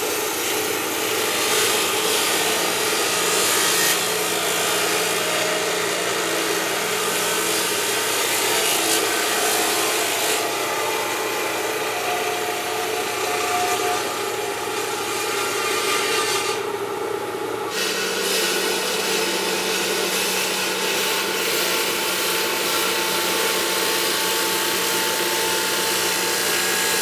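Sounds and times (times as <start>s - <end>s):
machine grinding stone: 0.0s - 27.0s.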